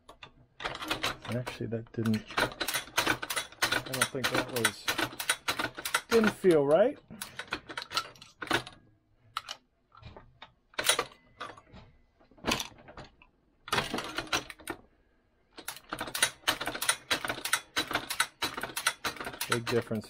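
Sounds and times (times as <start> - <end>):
shotshell press clicking and clattering: 0.0 - 11.7, 15.5 - 20.0.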